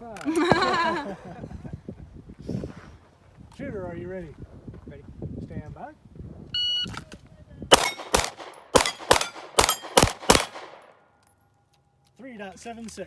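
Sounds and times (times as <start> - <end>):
rapid gunshots: 7.7 - 10.8.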